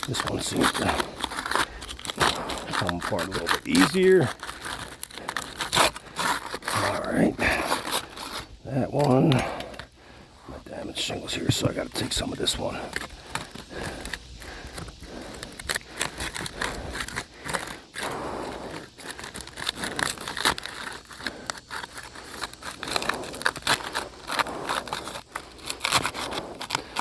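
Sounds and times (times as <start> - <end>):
roof shingle being pried loose: 0.0 - 6.8, 12.8 - 27.0.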